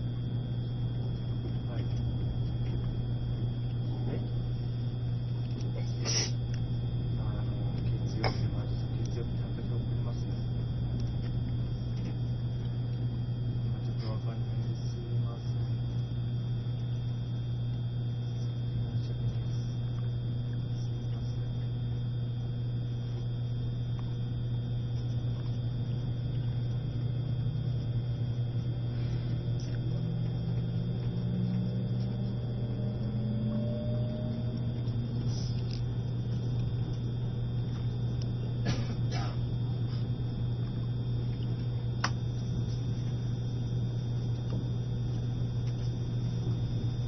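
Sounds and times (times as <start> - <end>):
motor whine rising in pitch: 0.0 - 21.7, 22.3 - 38.6
train low hum: 7.2 - 12.7.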